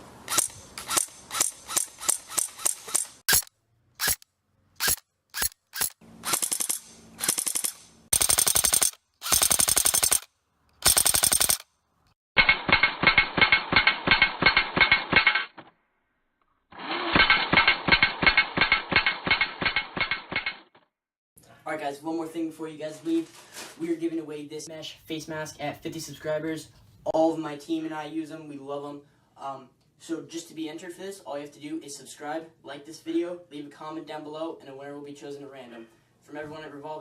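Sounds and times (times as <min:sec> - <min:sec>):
electric airsoft rifle firing: 0:04.8 - 0:11.6.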